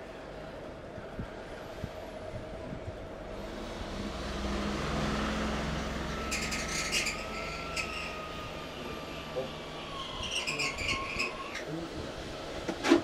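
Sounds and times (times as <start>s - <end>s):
vehicle engine rumbling past: 3.2s - 10.8s.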